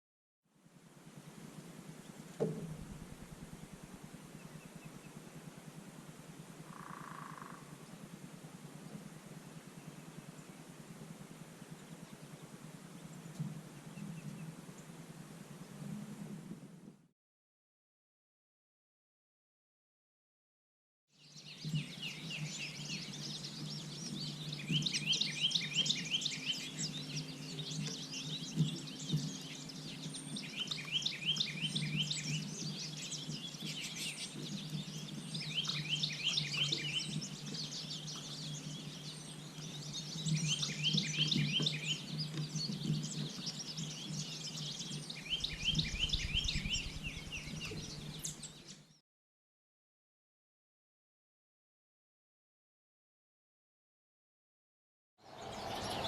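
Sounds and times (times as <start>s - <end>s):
songbird singing rapid notes: 21.2s - 49.0s, 55.3s - 56.0s.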